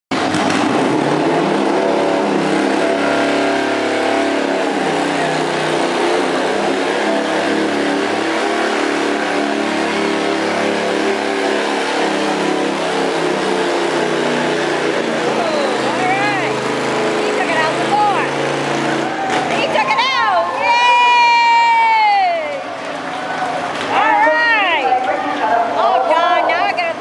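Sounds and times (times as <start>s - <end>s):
riding lawn mower engine: 0.1s - 27.0s.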